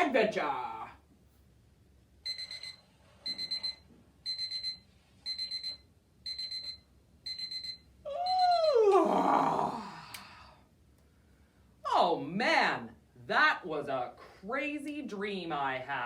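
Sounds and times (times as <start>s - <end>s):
alarm clock beeping: 2.3s - 8.5s.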